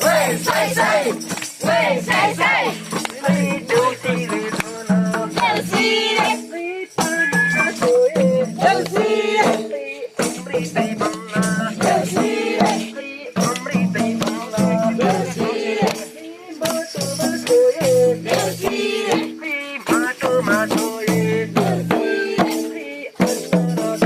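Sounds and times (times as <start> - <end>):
shaken rattle percussion: 0.0 - 24.0
voices singing: 0.0 - 24.0.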